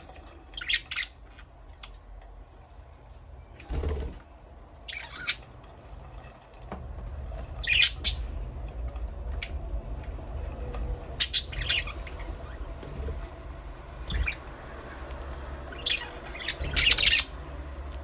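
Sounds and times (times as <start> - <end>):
low steady rumble: 0.0 - 18.0
budgerigars chirping and squawking: 0.6 - 1.2, 4.9 - 5.5, 7.5 - 8.3, 10.4 - 13.3, 14.0 - 17.4.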